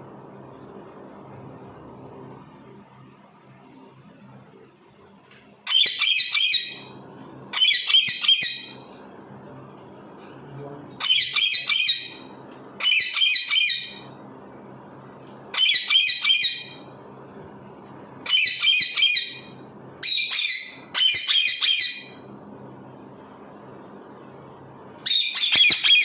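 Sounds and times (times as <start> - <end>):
parrot squawking: 5.7 - 6.9, 7.5 - 8.8, 11.0 - 12.2, 12.8 - 14.0, 15.5 - 16.8, 18.2 - 22.2, 25.0 - 26.0.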